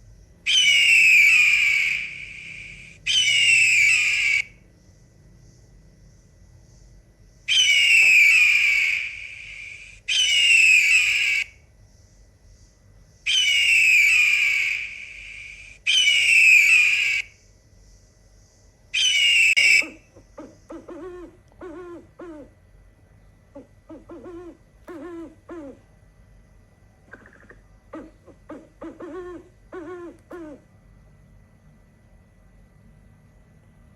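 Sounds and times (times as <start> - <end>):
shrill animal calls: 0.4 - 4.6, 7.4 - 11.7, 13.2 - 17.4, 18.9 - 22.7, 23.4 - 26.0, 27.1 - 30.8
short lower-pitched calls: 0.5 - 4.6, 7.5 - 11.6, 13.3 - 17.4, 19.0 - 20.1.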